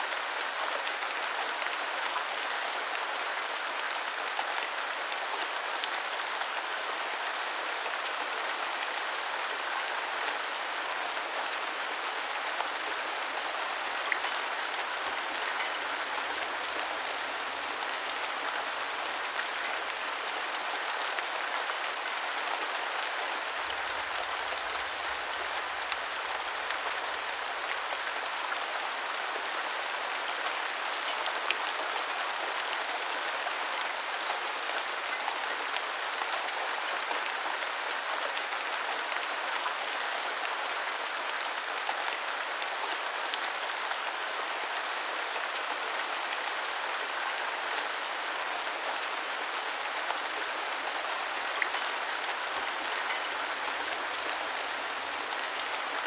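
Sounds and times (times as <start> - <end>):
rain falling: 0.0 - 56.0.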